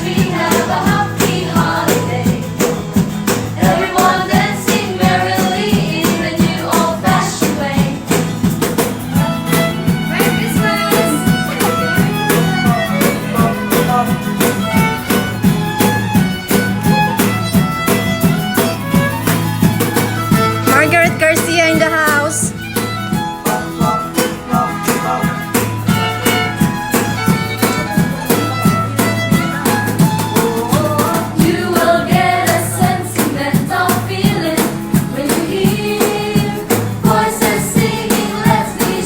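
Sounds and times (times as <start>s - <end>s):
band music with steady beat: 0.0s - 39.0s
person singing: 3.6s - 7.8s, 10.2s - 11.9s, 20.7s - 22.5s, 23.4s - 25.5s, 30.4s - 34.5s
violin-like melody: 8.9s - 31.2s.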